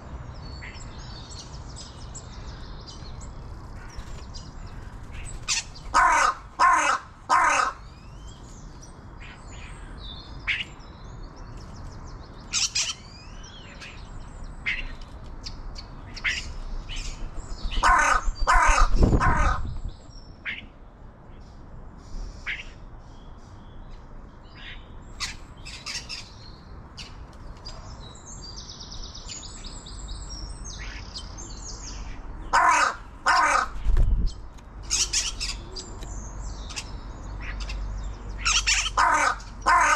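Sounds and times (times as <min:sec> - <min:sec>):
small birds chirping: 0:00.0 - 0:39.9
crow cawing: 0:05.9 - 0:07.8, 0:17.8 - 0:19.6, 0:32.5 - 0:33.8, 0:38.5 - 0:39.9.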